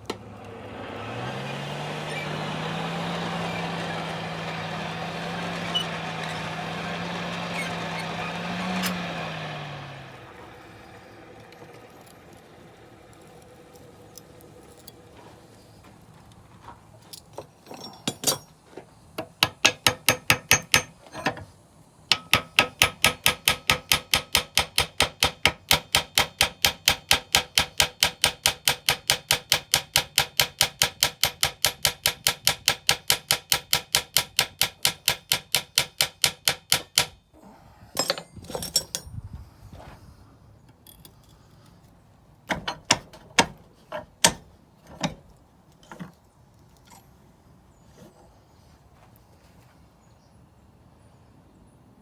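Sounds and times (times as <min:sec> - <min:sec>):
hammer striking iron on anvil: 0:19.2 - 0:21.4, 0:22.1 - 0:37.2.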